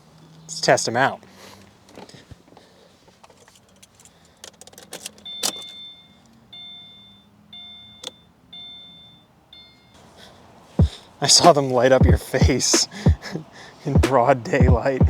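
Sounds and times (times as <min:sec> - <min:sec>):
keys jangling and clicking: 0:03.2 - 0:05.8
car warning chime: 0:05.0 - 0:10.2.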